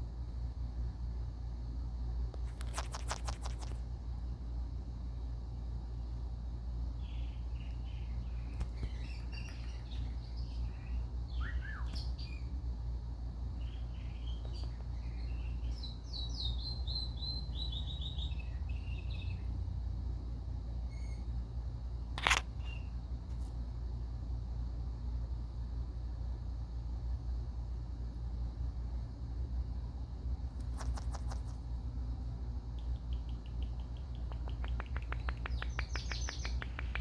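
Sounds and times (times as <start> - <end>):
steady low hum: 0.0 - 37.0
parakeet chirping: 2.7 - 3.7, 7.0 - 12.5, 13.6 - 19.4, 32.8 - 37.0.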